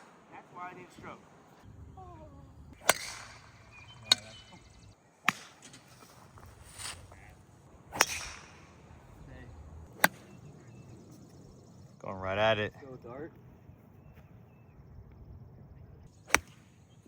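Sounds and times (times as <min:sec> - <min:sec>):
golf club striking ball: 0:02.8 - 0:05.8, 0:07.9 - 0:08.9, 0:16.3 - 0:16.6.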